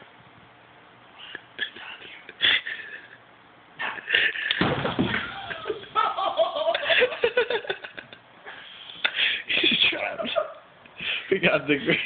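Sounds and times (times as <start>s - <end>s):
people laughing: 5.2s - 8.2s.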